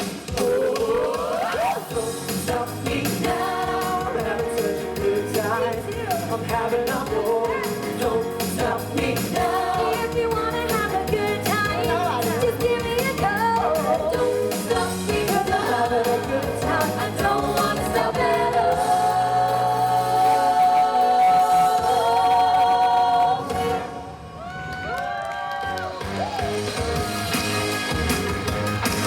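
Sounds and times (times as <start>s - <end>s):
voices singing live pop music: 0.0s - 24.4s.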